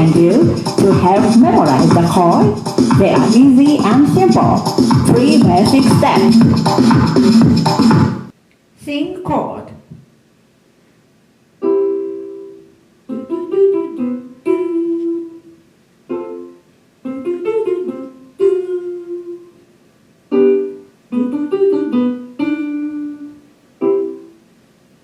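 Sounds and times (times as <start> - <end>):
keyboard chords and arpeggios: 0.0 - 8.1, 20.3 - 24.4.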